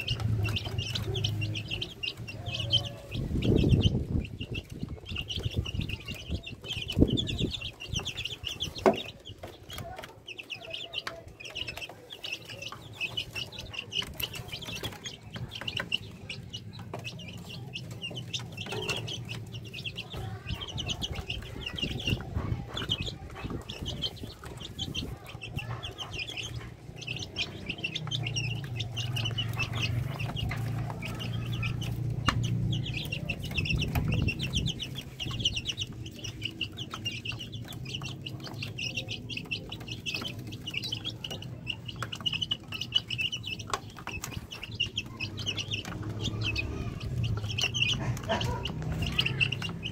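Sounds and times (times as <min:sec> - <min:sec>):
chicks peeping: 0:00.0 - 0:49.9.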